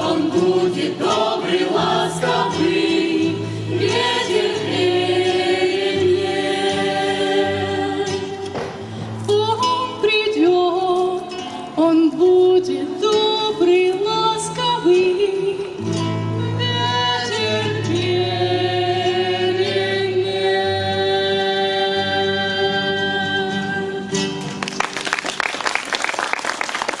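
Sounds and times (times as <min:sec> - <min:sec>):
singing with instrumental backing: 0:00.0 - 0:24.6
applause: 0:24.4 - 0:27.0.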